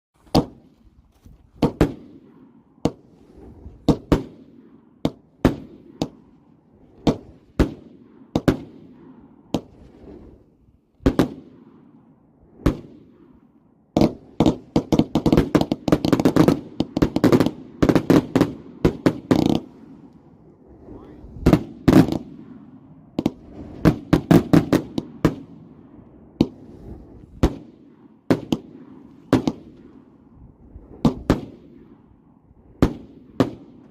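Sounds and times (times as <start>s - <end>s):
firework cake bangs: 31.0s - 31.6s.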